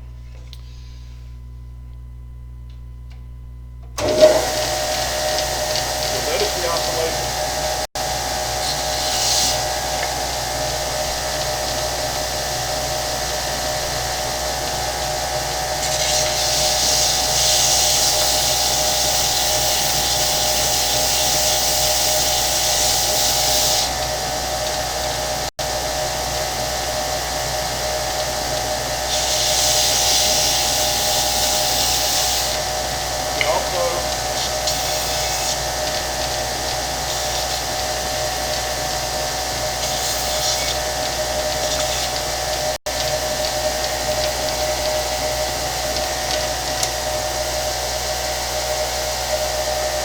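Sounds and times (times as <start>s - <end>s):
belt sander motor hum: 4.0s - 50.0s
sanding hissing rasp: 8.6s - 9.8s, 15.8s - 24.0s, 29.0s - 32.7s, 33.5s - 42.8s.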